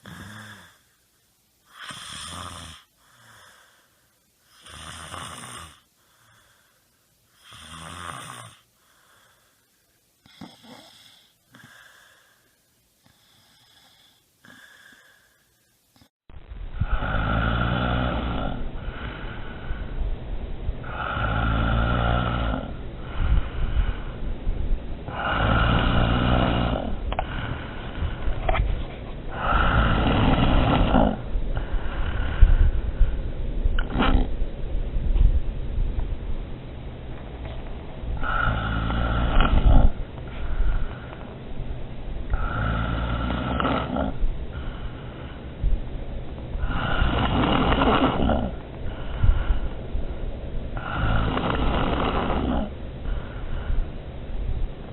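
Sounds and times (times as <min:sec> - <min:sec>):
person snoring: 0:00.0 - 0:00.9, 0:01.7 - 0:03.9, 0:04.5 - 0:06.6, 0:07.4 - 0:09.4, 0:10.2 - 0:12.4, 0:13.1 - 0:15.4, 0:16.7 - 0:19.7, 0:20.8 - 0:24.1, 0:25.1 - 0:28.2, 0:29.3 - 0:32.7, 0:33.8 - 0:34.4, 0:38.2 - 0:41.3, 0:42.3 - 0:45.4, 0:46.6 - 0:49.6, 0:50.8 - 0:53.5
snorts: 0:00.0 - 0:00.9, 0:01.7 - 0:03.6, 0:04.5 - 0:06.5, 0:07.4 - 0:09.2, 0:10.2 - 0:12.2, 0:16.8 - 0:19.4, 0:20.8 - 0:23.5, 0:25.1 - 0:32.6, 0:33.8 - 0:34.4, 0:38.2 - 0:41.3, 0:42.3 - 0:45.4, 0:46.6 - 0:49.6, 0:50.8 - 0:53.7.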